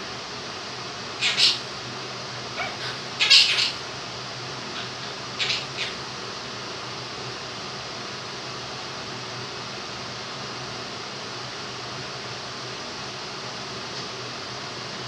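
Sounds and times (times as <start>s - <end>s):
electric fan hiss: 0.0s - 15.0s
parrot squawking: 1.1s - 1.8s, 2.5s - 4.0s, 4.6s - 6.1s.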